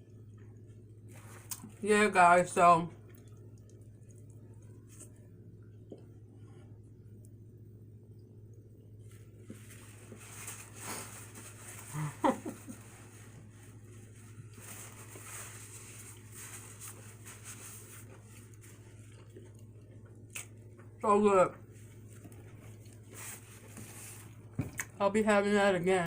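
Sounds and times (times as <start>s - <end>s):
steady low hum: 0.0s - 26.0s
person chewing: 1.3s - 1.8s, 17.8s - 21.0s, 21.9s - 23.8s.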